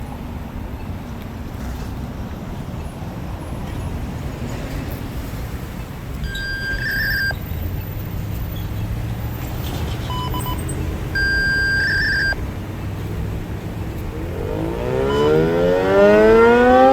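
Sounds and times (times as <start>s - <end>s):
road traffic rumble: 0.0s - 16.9s
high electronic beep: 6.2s - 7.4s, 10.1s - 12.4s, 14.9s - 15.6s.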